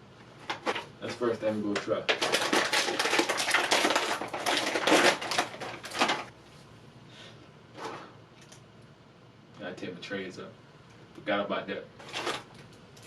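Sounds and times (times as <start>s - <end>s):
plastic wrapper crinkling: 1.1s - 6.3s, 12.0s - 13.0s.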